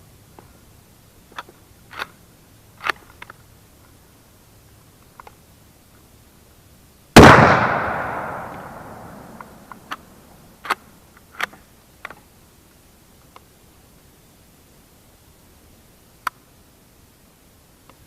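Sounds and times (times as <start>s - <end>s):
shotgun shot with echo: 7.2s - 9.7s.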